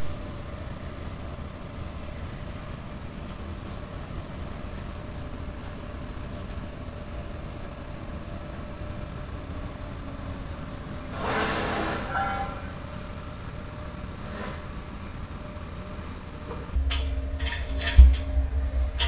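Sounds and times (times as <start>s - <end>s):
loud hissing burst: 11.1s - 15.4s
low mechanical rumble: 12.0s - 19.0s.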